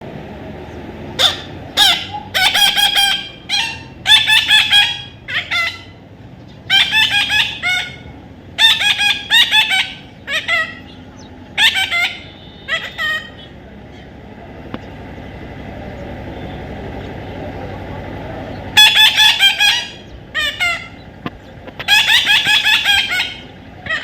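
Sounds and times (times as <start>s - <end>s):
parrot squawking: 1.2s - 6.0s, 6.7s - 14.1s, 18.6s - 21.1s, 21.8s - 24.0s.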